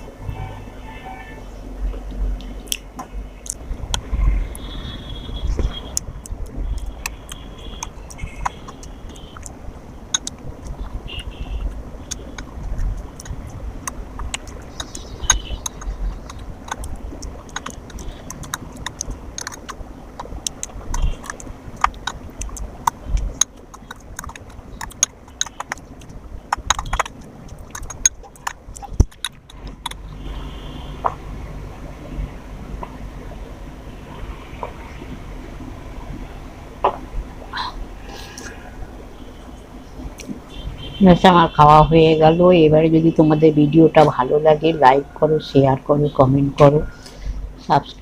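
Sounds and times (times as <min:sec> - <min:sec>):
chewing with clicks and smacks: 0:02.0 - 0:04.7, 0:05.4 - 0:31.2.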